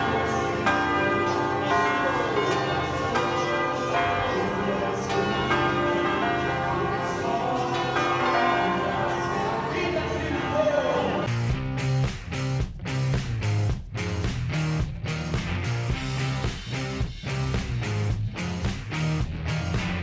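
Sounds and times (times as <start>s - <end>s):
church bells ringing: 0.0s - 11.3s.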